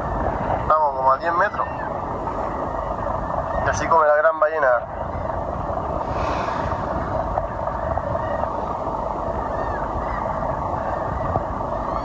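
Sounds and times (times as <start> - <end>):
boat rushing on water: 0.0 - 12.0
low rumble: 5.6 - 8.5.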